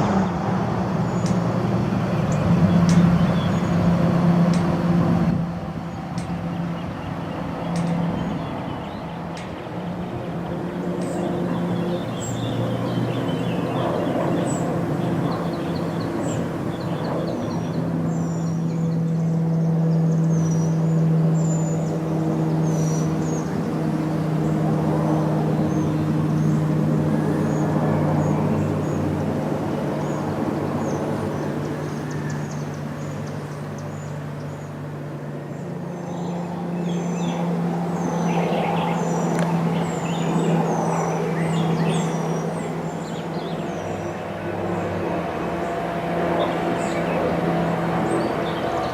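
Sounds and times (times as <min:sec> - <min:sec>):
aircraft engines droning: 0:00.0 - 0:48.9
birds chirping: 0:00.0 - 0:48.9.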